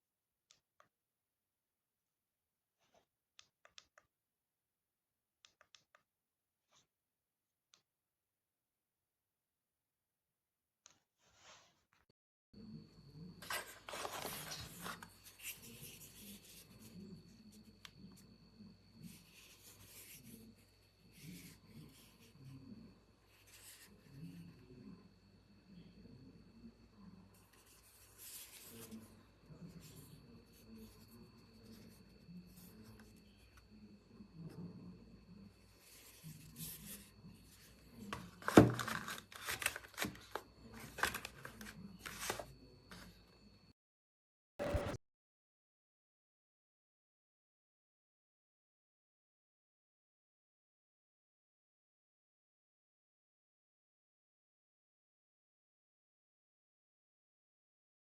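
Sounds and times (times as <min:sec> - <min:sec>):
faint high whine: 0:12.6 - 0:43.8.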